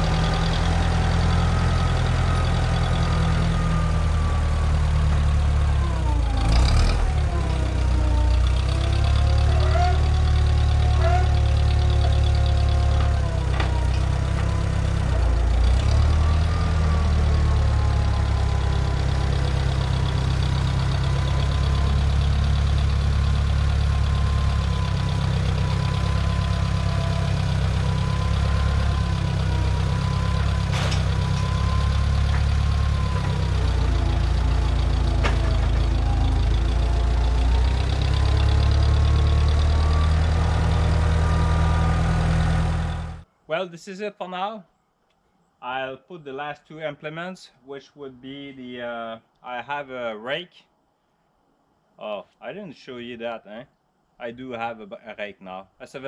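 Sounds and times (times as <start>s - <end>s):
tractor engine running: 0.0s - 43.3s.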